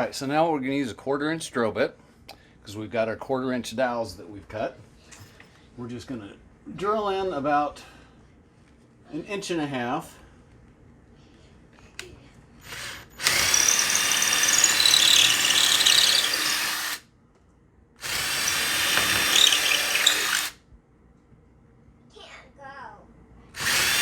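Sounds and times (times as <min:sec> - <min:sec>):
power drill boring into wood: 0:12.8 - 0:17.0, 0:18.0 - 0:20.6, 0:23.6 - 0:24.0.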